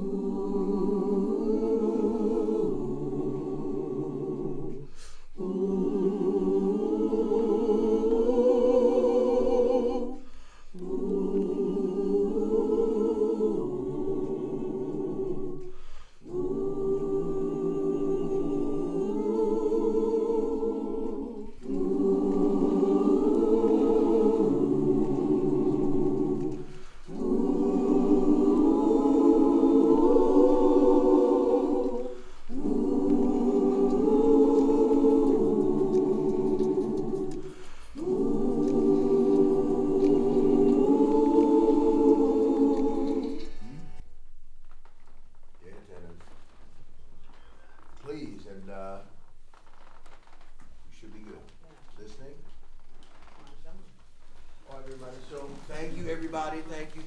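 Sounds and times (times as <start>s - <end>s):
choir singing a cappella: 0.0s - 44.2s, 53.5s - 57.0s
singers breathing: 4.8s - 5.4s, 10.2s - 10.8s, 15.6s - 16.3s, 37.4s - 38.0s, 47.2s - 48.0s.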